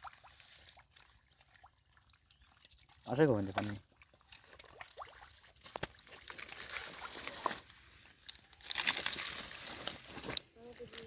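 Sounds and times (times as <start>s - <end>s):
water splashing: 0.0s - 7.6s
water sloshing and trickling: 0.0s - 11.0s.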